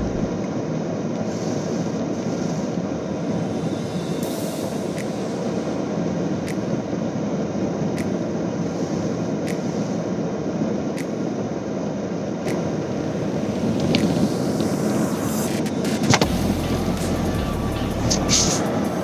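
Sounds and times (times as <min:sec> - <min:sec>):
car road and engine noise: 0:00.0 - 0:00.5, 0:12.4 - 0:19.0.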